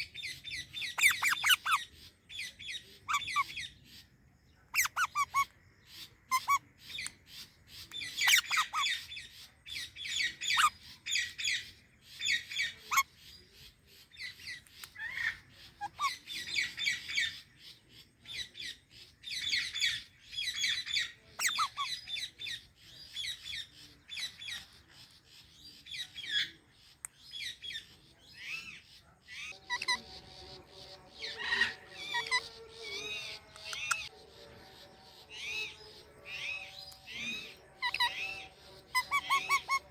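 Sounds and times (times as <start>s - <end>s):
parakeets calling shrilly: 0.0s - 4.1s, 4.7s - 13.2s, 14.2s - 17.5s, 19.3s - 22.6s, 27.4s - 39.9s.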